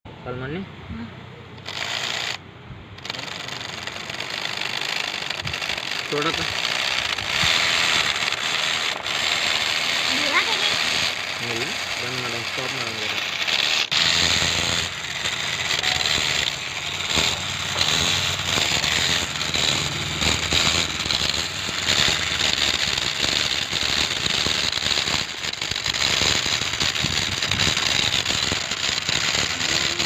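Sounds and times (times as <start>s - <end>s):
drilling rig rattling: 1.6s - 2.4s, 3.0s - 30.0s.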